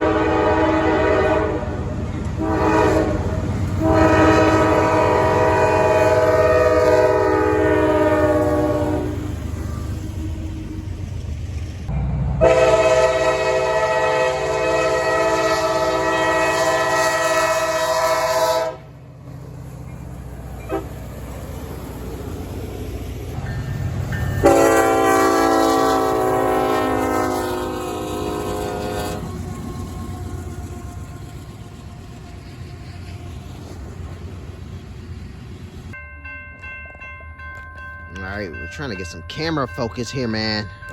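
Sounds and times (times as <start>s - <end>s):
locomotive air horn blasts: 0.0s - 1.8s, 2.4s - 9.8s, 12.4s - 18.9s, 20.6s - 21.0s, 24.4s - 31.4s.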